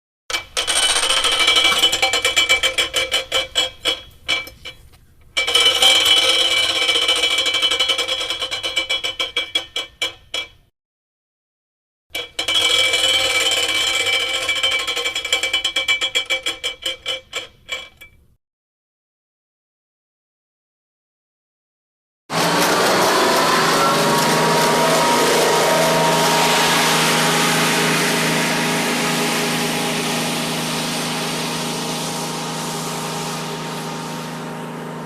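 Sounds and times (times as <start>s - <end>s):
high ringing tone: 23.3s - 33.3s.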